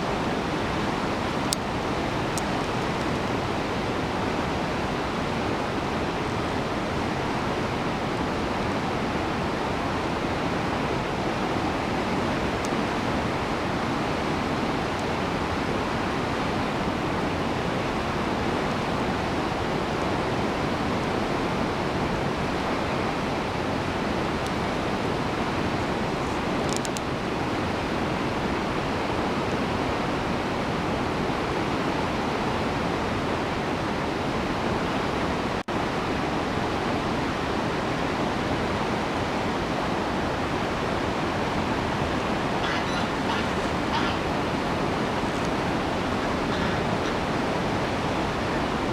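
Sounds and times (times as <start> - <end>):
waterfall rushing: 37.2 - 48.9.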